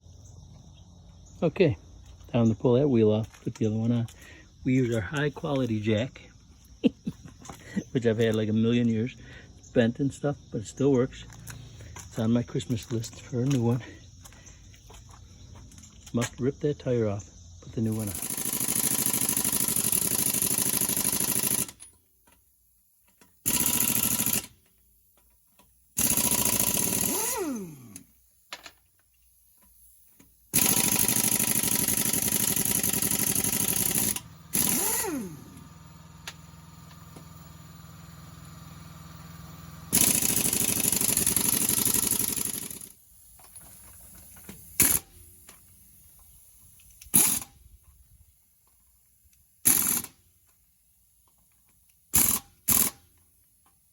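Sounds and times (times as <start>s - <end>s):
impact wrench running: 17.8s - 22.0s, 23.4s - 24.7s, 26.0s - 28.7s, 30.5s - 45.6s, 46.8s - 47.6s, 49.6s - 50.2s, 52.1s - 53.2s.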